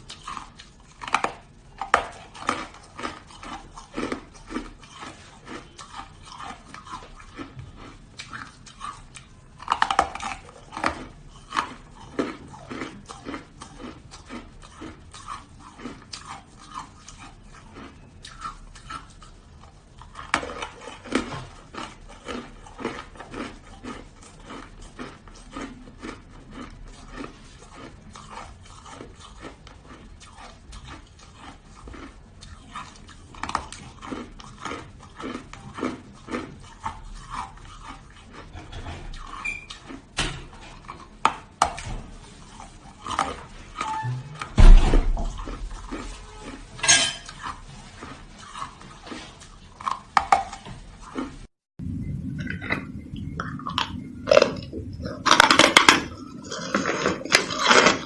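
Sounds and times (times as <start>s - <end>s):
shaved ice being chewed: 0.0s - 51.5s, 52.4s - 58.0s.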